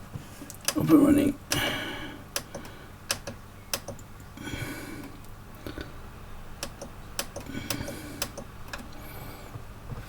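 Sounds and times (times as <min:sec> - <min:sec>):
sharp clicks: 0:02.4 - 0:04.1, 0:06.6 - 0:08.9.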